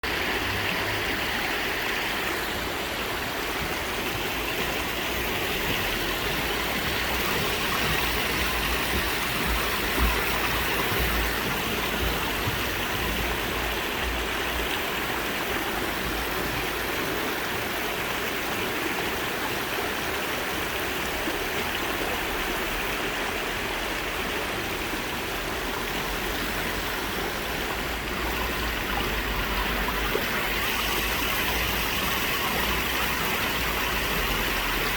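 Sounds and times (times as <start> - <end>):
mountain stream babbling: 0.0 - 34.9.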